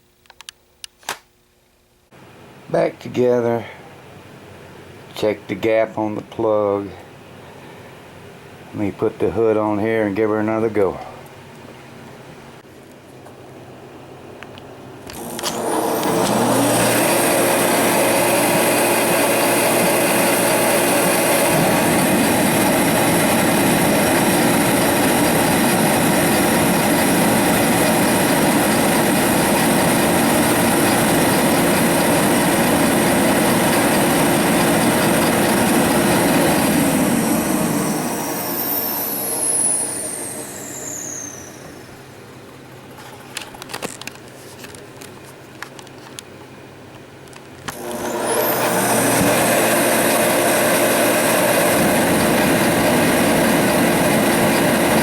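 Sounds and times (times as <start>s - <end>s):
heater blower whine: 13.2s - 44.1s, 47.7s - 55.0s
heater roaring: 15.0s - 42.3s, 47.7s - 55.0s.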